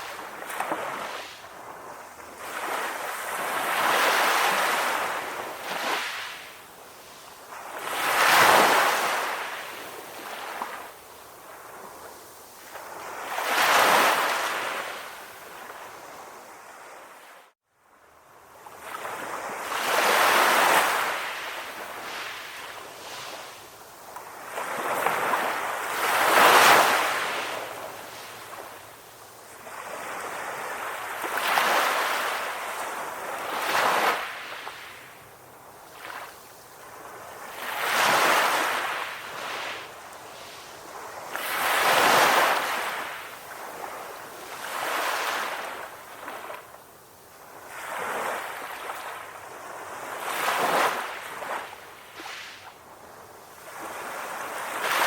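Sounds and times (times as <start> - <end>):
sea waves breaking on shore: 0.0 - 17.6, 18.6 - 55.0.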